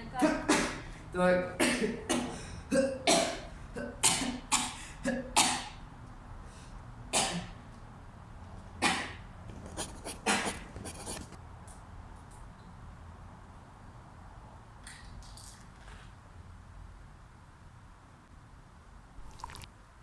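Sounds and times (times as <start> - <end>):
person coughing: 0.2 - 0.9, 1.6 - 5.8, 7.2 - 7.6.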